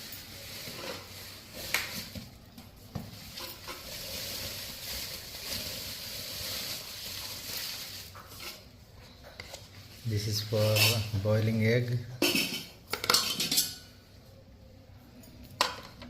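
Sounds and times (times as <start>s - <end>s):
packaging rustling: 0.0s - 8.7s.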